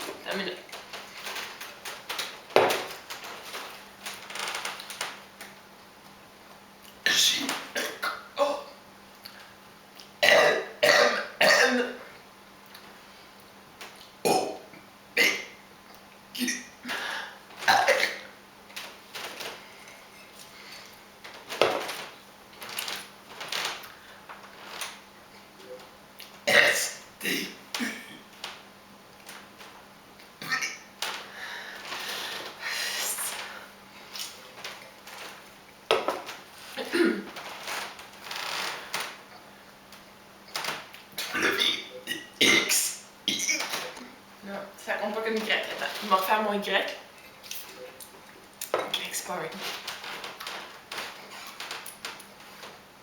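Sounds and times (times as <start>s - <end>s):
woman burping: 14.2s - 14.6s, 36.8s - 37.3s, 41.3s - 43.6s.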